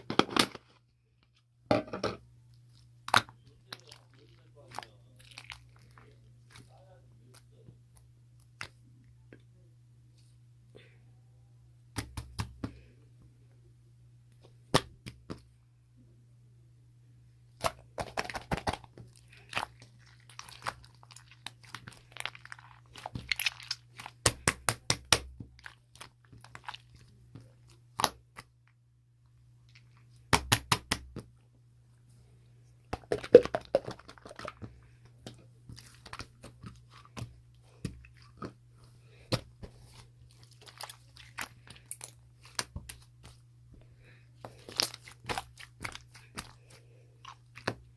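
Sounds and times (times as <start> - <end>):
crisp crunching and chewing: 2.6 - 7.4, 17.6 - 28.3, 33.0 - 43.4, 44.4 - 47.9.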